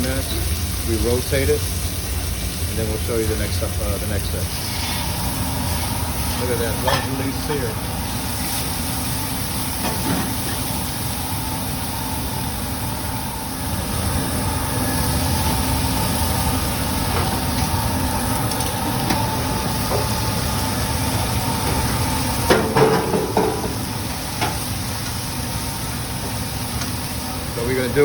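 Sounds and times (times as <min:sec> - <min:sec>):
low mechanical rumble: 0:00.0 - 0:28.0
meat sizzling on a griddle: 0:00.0 - 0:28.0.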